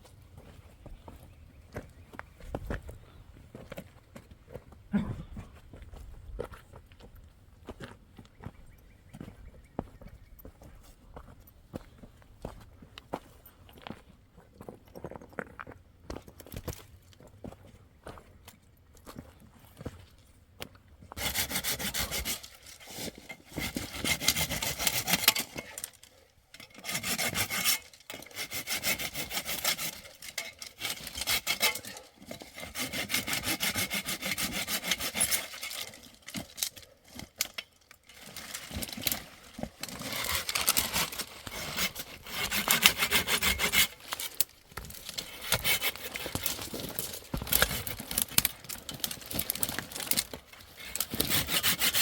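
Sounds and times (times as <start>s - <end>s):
hand saw cutting wood: 21.2s - 52.0s.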